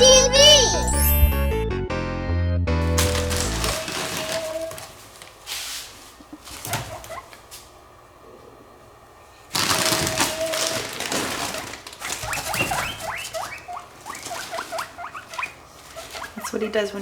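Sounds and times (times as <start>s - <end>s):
guinea pig squeaking: 0.0s - 1.4s, 3.0s - 4.9s, 6.4s - 7.4s, 9.7s - 17.0s
loud rustling: 2.8s - 7.7s, 9.5s - 17.0s.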